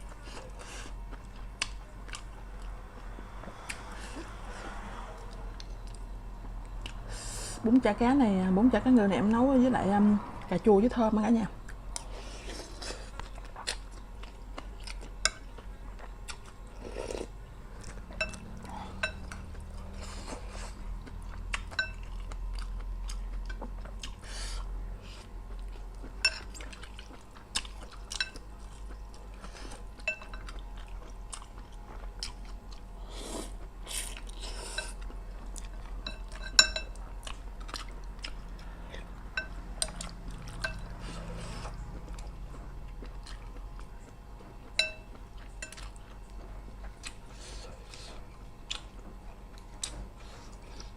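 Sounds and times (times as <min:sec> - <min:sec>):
chewing: 0:00.0 - 0:07.0, 0:11.7 - 0:50.9
utensils clinking against bowl: 0:18.2 - 0:19.4, 0:21.7 - 0:22.1, 0:26.2 - 0:26.6, 0:30.0 - 0:30.6, 0:36.0 - 0:37.0, 0:39.3 - 0:41.1, 0:44.7 - 0:45.9.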